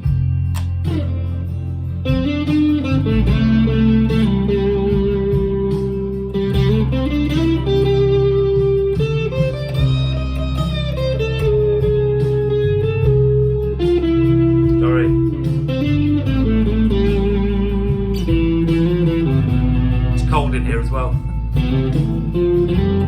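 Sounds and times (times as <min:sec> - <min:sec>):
backing track bass line: 0:00.0 - 0:23.0
electric guitar lead with bends: 0:00.0 - 0:23.0.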